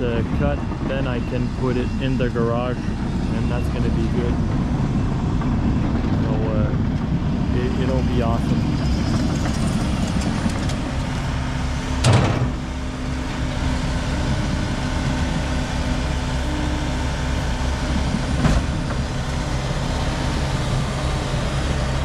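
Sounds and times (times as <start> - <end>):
vehicle engine running: 0.0 - 22.0
sharp knocks: 12.0 - 12.6.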